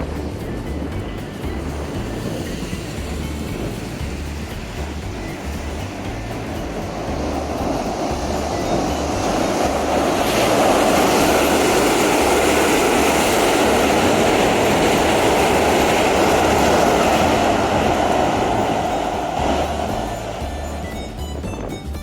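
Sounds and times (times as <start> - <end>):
train wheels rumbling on rails: 0.0 - 22.0.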